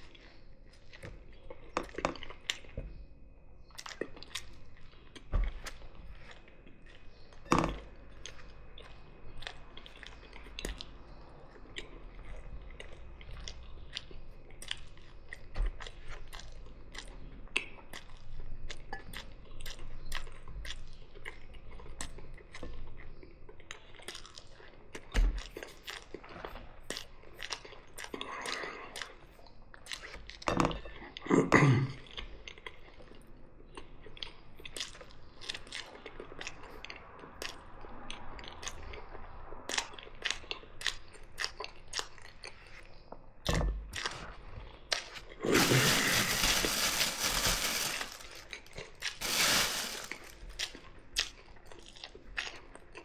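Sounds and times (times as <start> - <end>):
chewing with crunches: 3.6 - 31.3, 32.0 - 43.2, 43.9 - 53.0.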